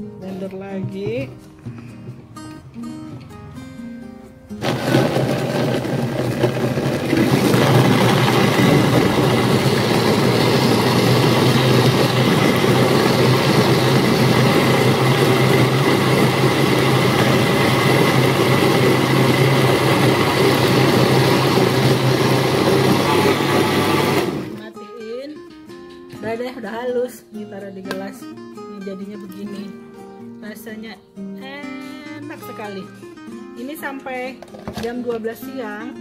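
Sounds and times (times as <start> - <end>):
electric blender running: 4.6 - 24.6.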